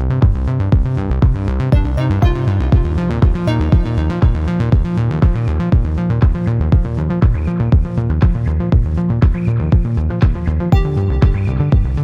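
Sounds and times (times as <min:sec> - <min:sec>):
steady kick drum: 0:00.2 - 0:12.0
sustained synth chords: 0:01.8 - 0:06.2, 0:10.7 - 0:12.0.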